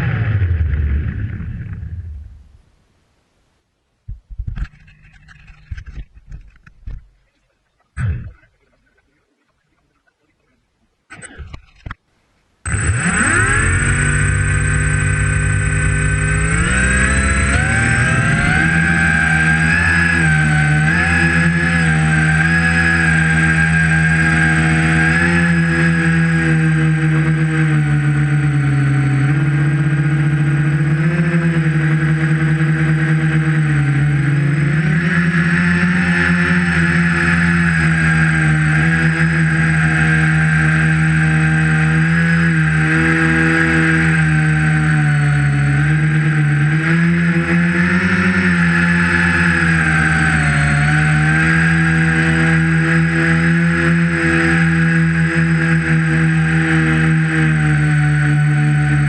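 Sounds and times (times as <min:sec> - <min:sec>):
drone motors and propellers: 0:00.0 - 0:02.5, 0:12.6 - 0:59.0
clicks and rustles: 0:04.1 - 0:10.2, 0:11.1 - 0:12.1.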